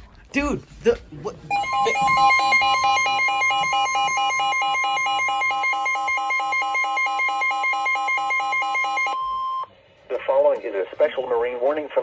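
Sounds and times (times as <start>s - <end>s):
rapid two-pitch beeping alarm: 1.5s - 9.7s
steady high-pitched alarm tone: 1.5s - 9.7s.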